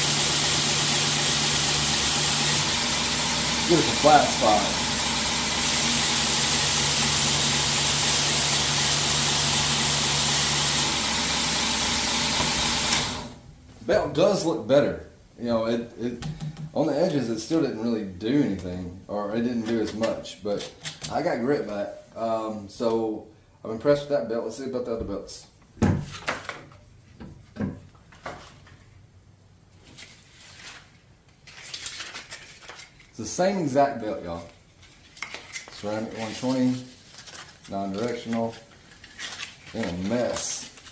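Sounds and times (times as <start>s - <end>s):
grinder motor hum: 0.0s - 13.4s
rubber hissing on grinder belt: 0.0s - 13.4s
objects knocking and rustling: 16.2s - 16.8s.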